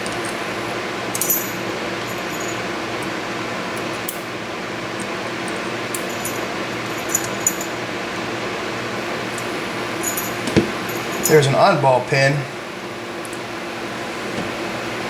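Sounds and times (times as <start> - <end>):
background hum: 0.0 - 15.0
small metal parts clinking: 1.1 - 2.7, 5.4 - 7.8, 9.4 - 11.4.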